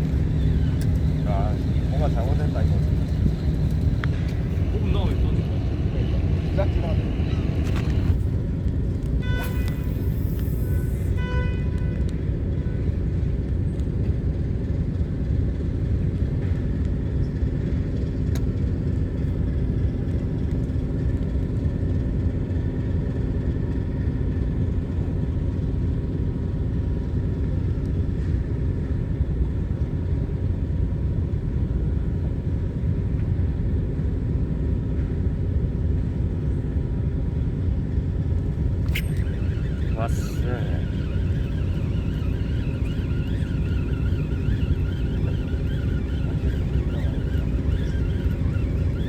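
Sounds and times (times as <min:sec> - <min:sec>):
wind buffeting microphone: 0:00.0 - 0:09.0, 0:38.0 - 0:49.0
faint steady hum: 0:00.0 - 0:12.8, 0:37.8 - 0:49.0.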